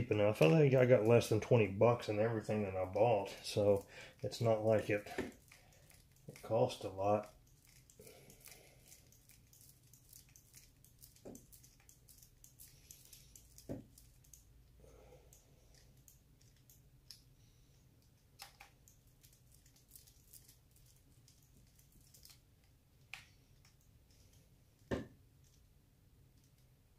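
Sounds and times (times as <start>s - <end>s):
small tools and plastic parts clicking: 5.1s - 17.3s, 18.0s - 25.7s.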